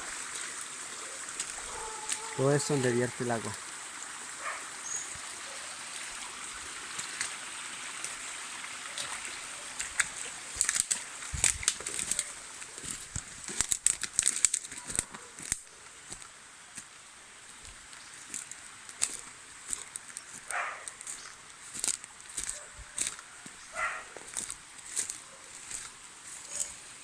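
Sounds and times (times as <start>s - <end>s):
footsteps through dry leaves: 0.0s - 3.4s, 8.9s - 27.0s
spring water trickling: 0.0s - 27.0s.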